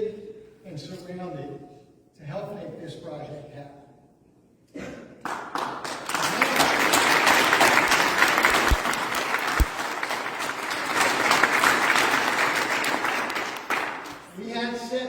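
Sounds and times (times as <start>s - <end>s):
audience applauding: 5.2s - 14.4s.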